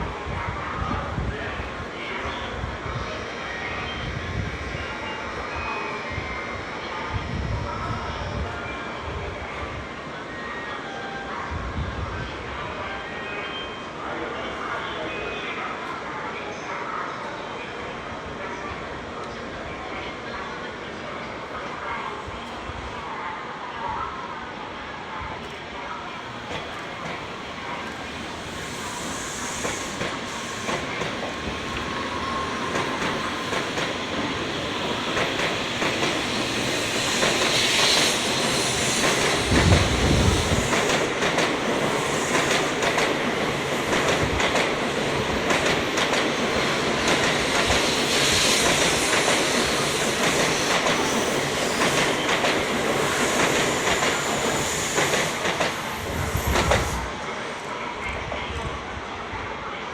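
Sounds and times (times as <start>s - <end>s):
train pulling out: 25.3s - 59.2s.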